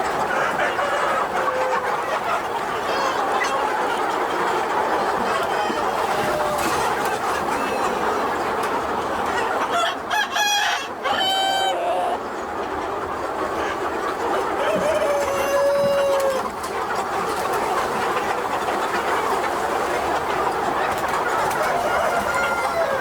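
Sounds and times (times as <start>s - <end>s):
chickens clucking: 0.0s - 23.0s
rooster crowing: 9.8s - 12.2s, 14.6s - 16.4s, 21.6s - 23.0s.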